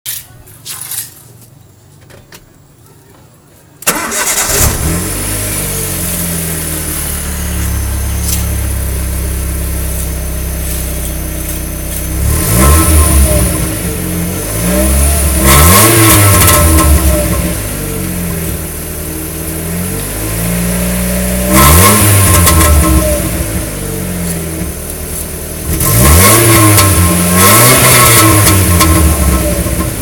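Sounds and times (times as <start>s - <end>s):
engine starting and idling: 3.8s - 11.9s
engine revving: 3.9s - 30.0s.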